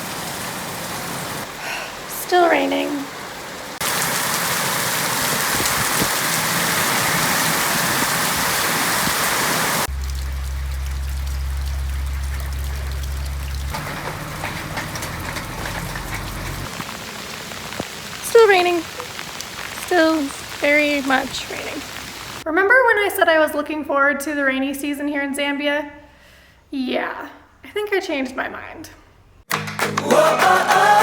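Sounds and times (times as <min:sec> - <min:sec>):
heavy rain pouring: 0:00.0 - 0:22.4
raindrops falling: 0:00.0 - 0:22.5
steady low hum: 0:09.9 - 0:14.6.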